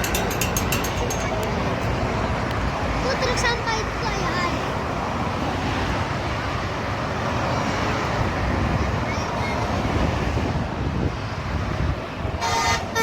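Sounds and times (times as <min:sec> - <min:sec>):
traffic passing close by: 0:00.0 - 0:13.0.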